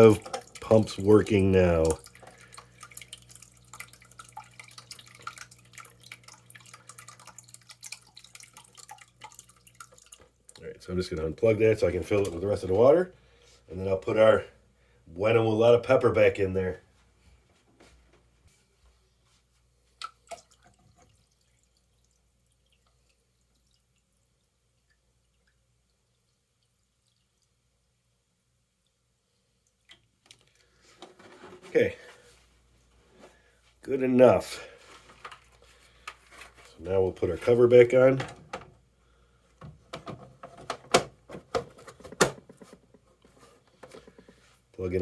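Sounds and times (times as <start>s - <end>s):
water trickling and dripping: 0.0s - 11.4s, 20.0s - 28.1s
water pump humming: 0.0s - 16.6s.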